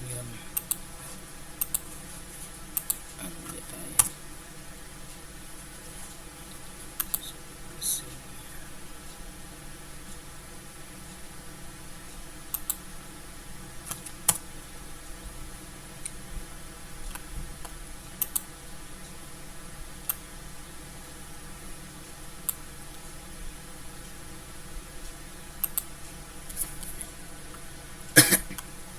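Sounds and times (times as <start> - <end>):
room hiss: 0.0 - 28.9
mouse and keyboard clicks: 1.6 - 2.0, 2.8 - 4.1, 7.0 - 7.2, 18.2 - 18.5, 25.6 - 25.9.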